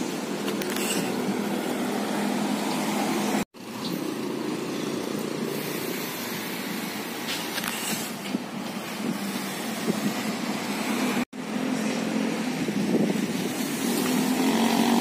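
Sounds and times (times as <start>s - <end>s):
road traffic hum: 0.0s - 15.0s
wind on microphone: 12.3s - 15.0s.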